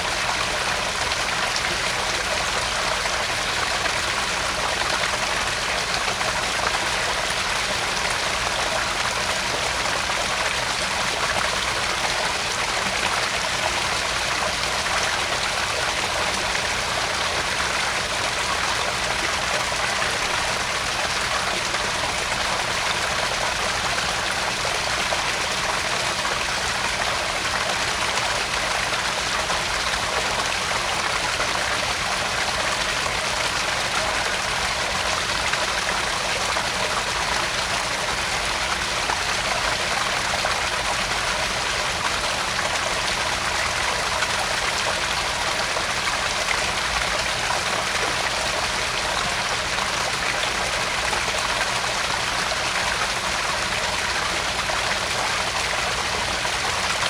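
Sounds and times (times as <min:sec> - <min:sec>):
pond waterfall splashing: 0:00.0 - 0:57.0.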